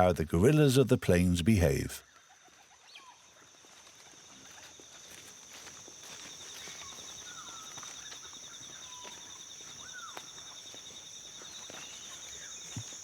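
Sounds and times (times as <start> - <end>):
high insect drone: 3.0 - 13.0
pulsing insect trill: 3.0 - 13.0.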